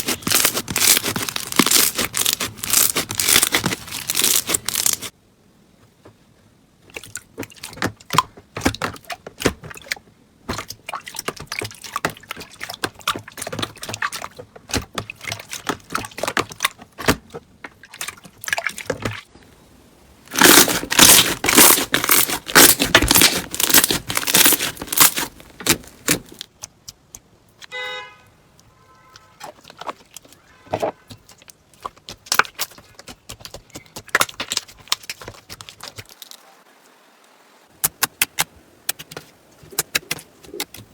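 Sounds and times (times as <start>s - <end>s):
crunchy slime crackling: 0.0s - 5.1s, 20.3s - 26.7s.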